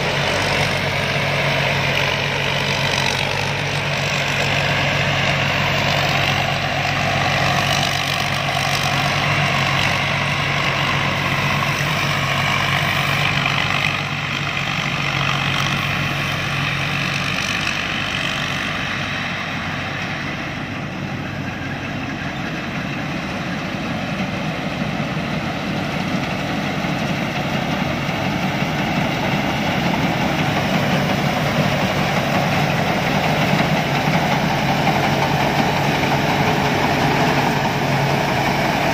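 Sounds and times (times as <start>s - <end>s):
combine harvester engine running: 0.0s - 38.9s.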